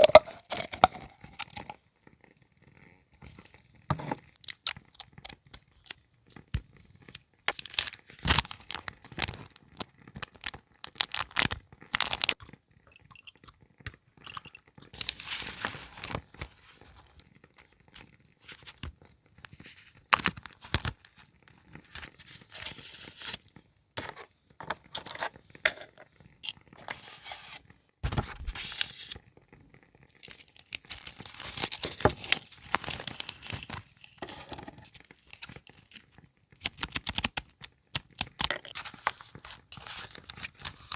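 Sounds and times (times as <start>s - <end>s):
paper tearing and crinkling: 15.0s - 16.8s, 30.2s - 36.0s.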